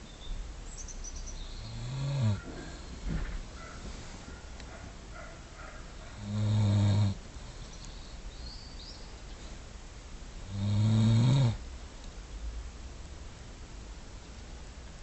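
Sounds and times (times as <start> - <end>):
man snoring: 1.7 - 2.9, 6.2 - 7.6, 10.4 - 11.6.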